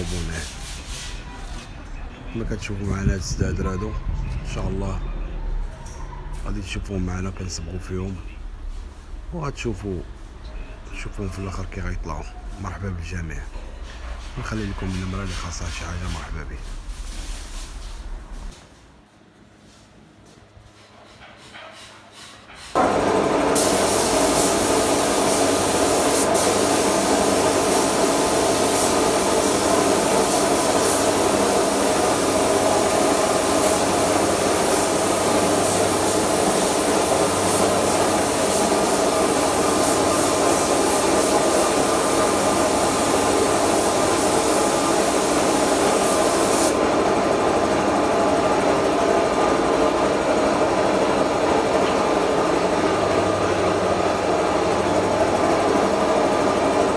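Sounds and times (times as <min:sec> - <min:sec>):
paint spray gun hissing: 0:23.1 - 0:46.8.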